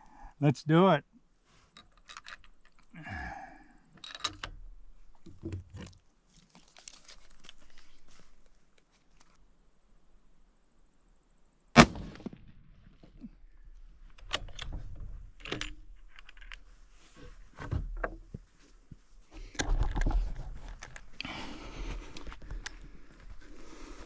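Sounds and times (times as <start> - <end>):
rustling handling noise: 5.1 - 9.4
rifle shot: 11.8 - 12.8
small clicks and knocks: 14.1 - 21.3.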